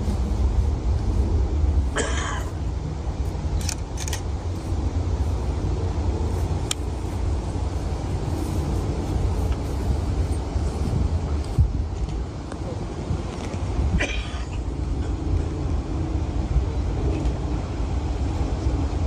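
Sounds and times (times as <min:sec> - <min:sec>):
wind rumbling on microphone: 0:00.0 - 0:19.0.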